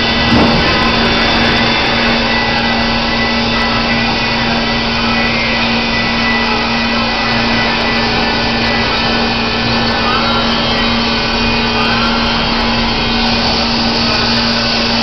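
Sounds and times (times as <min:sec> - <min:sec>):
band sawmill sawing log: 0:00.0 - 0:02.5.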